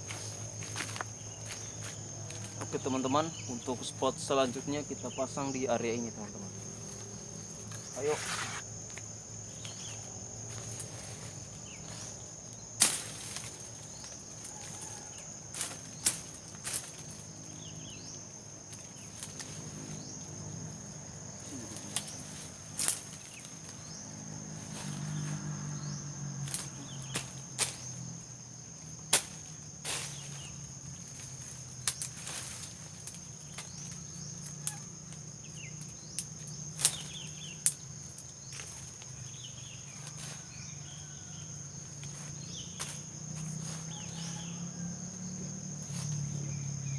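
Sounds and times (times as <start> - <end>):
cricket trilling: 0.0 - 46.9
twigs snapping underfoot: 12.5 - 17.3, 18.7 - 19.7, 21.6 - 23.8, 26.4 - 28.0, 29.0 - 30.4, 31.0 - 39.2.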